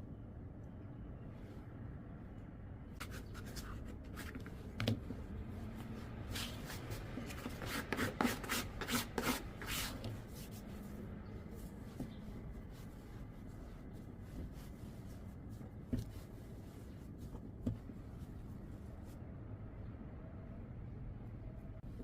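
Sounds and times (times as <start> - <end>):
hands rubbing bread dough: 3.0 - 19.2.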